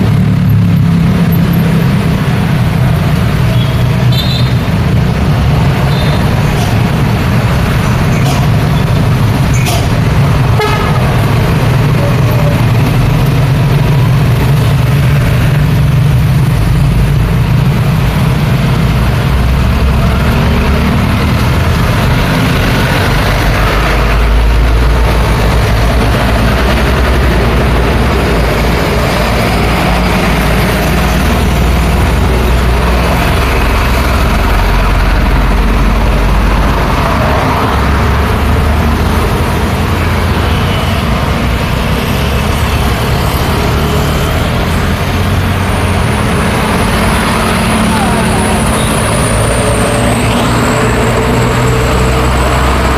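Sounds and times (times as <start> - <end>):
heavy road traffic rumbling: 0.0 - 52.9
vehicle horn toot: 3.6 - 4.6, 10.5 - 11.1.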